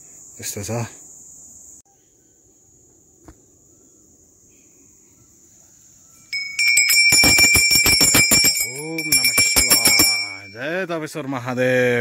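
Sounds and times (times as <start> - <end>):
metal bells ringing: 6.3 - 10.8.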